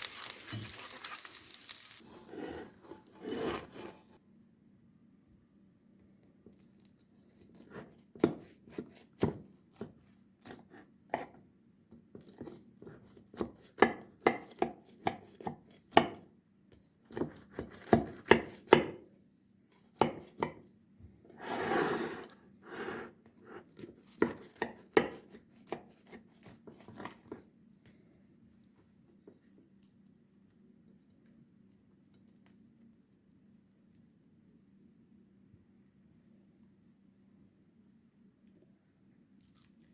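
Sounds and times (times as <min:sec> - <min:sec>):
knife cutting on cutting board: 0:02.2 - 0:04.2
knife rasping stroke: 0:02.2 - 0:04.2.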